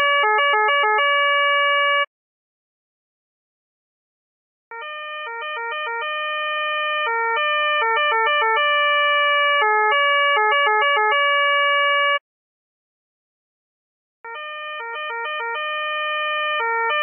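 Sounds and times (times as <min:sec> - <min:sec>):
police two-tone siren: 0:00.0 - 0:02.1, 0:04.7 - 0:12.2, 0:14.3 - 0:17.0.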